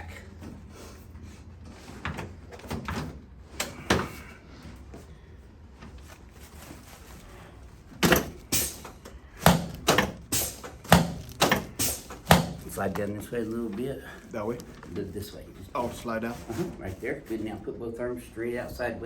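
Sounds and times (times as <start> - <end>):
soft shuffling on a table: 4.6 - 7.9, 12.6 - 17.7
knocks: 9.4 - 12.7.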